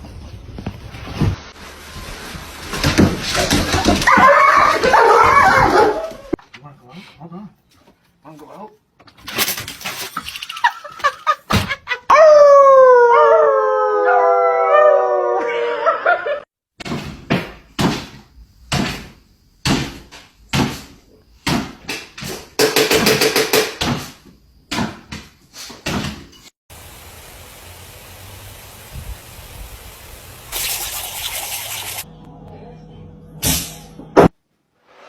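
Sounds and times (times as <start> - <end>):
dog howling: 4.0 - 6.4, 12.1 - 16.4.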